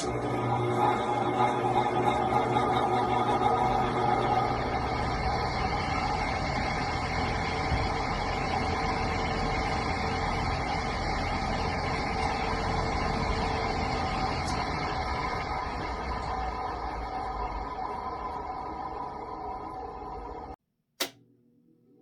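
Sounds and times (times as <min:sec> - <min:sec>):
electric fan motor humming: 0:00.0 - 0:17.2.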